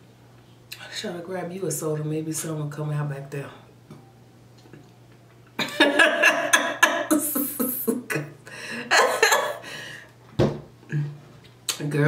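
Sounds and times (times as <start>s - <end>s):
woman chuckling: 5.6s - 9.7s.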